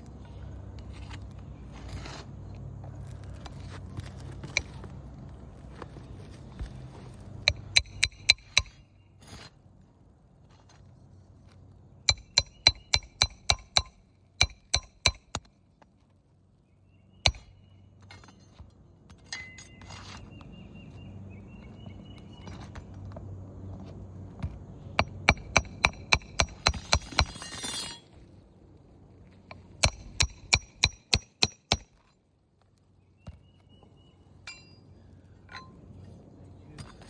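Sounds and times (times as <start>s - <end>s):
hammer striking metal: 7.5s - 8.8s, 12.1s - 15.4s, 25.0s - 28.0s, 29.8s - 31.9s.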